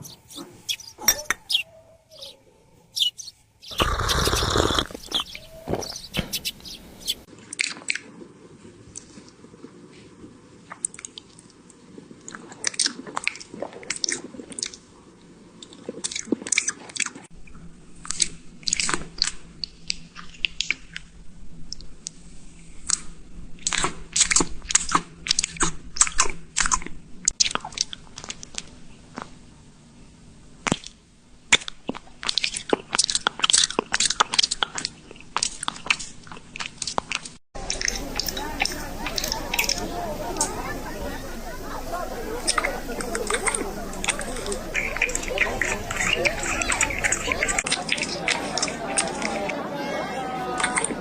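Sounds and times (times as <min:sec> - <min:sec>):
crunchy chewing: 0:00.0 - 0:07.3, 0:32.2 - 0:49.3
crunchy chewing and biting: 0:03.0 - 0:07.3.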